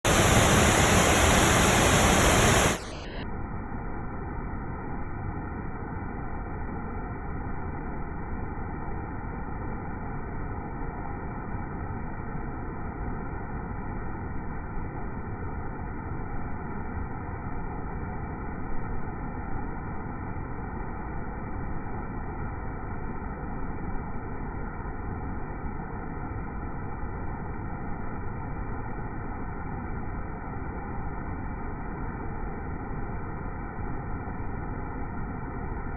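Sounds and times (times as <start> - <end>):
waterfall rushing: 0.0 - 3.1.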